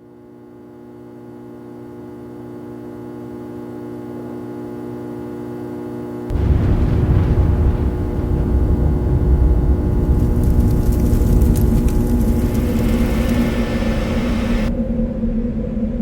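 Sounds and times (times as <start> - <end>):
loud rumbling rush: 6.3 - 14.9
low drone of held tones: 6.3 - 16.0.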